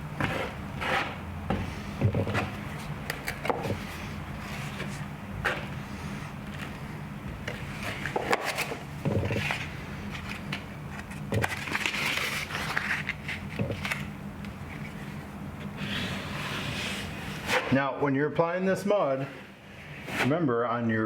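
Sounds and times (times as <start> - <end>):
low steady hum: 0.0 - 21.0
drywall knife scraping: 0.2 - 2.5, 15.8 - 17.8.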